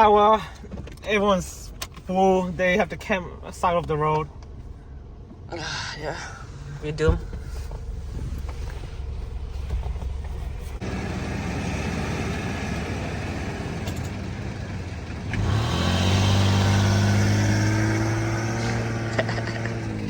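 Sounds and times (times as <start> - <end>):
road tyre noise: 0.0 - 20.0
vehicle engine revving: 7.3 - 20.0.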